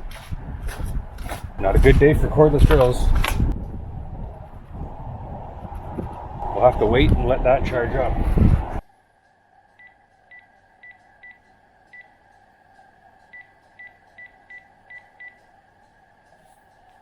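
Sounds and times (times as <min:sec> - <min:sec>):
faint steady hum: 0:03.5 - 0:17.0
electronic keypad beeps: 0:09.8 - 0:12.1, 0:13.3 - 0:15.4.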